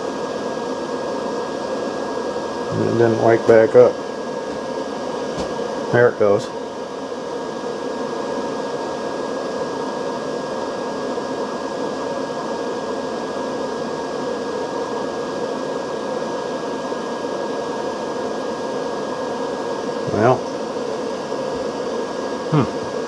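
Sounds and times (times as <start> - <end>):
fan whirring: 0.0 - 9.1, 17.9 - 23.0.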